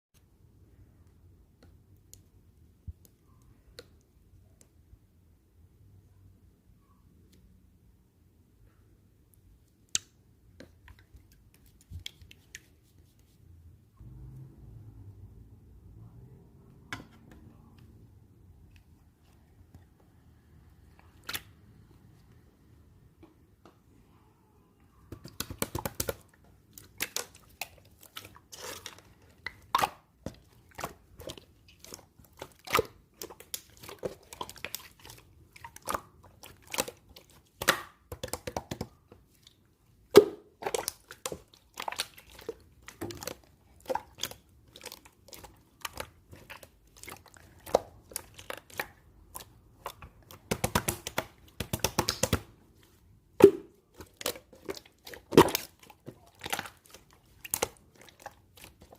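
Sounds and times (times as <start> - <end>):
slime squished clicking and popping: 25.1 - 27.8, 35.7 - 38.9, 40.1 - 52.5.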